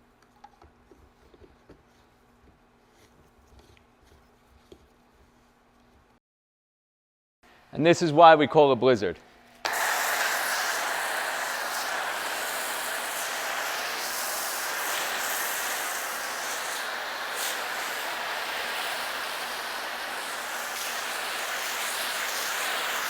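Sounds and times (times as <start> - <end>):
foam cannon spraying hiss: 9.7 - 23.0.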